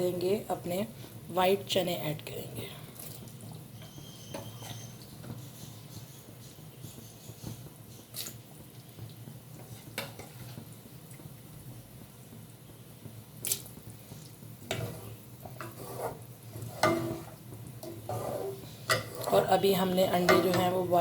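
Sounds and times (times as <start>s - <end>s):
liquid sloshing in pot: 13.5s - 19.6s
utensil clinking against pot: 16.7s - 19.6s, 20.2s - 20.8s.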